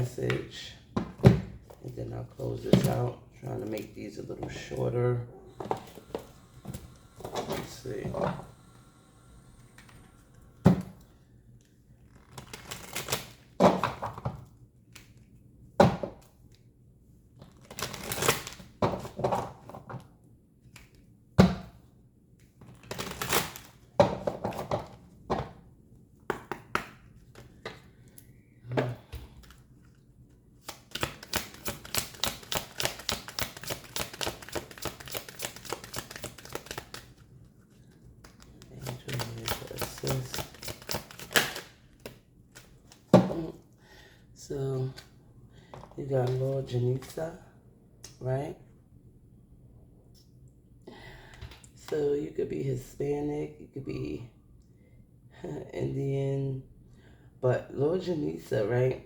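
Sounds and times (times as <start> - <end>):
cards tapping and slapping: 26.3 - 27.8, 30.6 - 37.2, 38.2 - 43.5
cards flicking while shuffled: 30.6 - 37.2, 38.2 - 42.7.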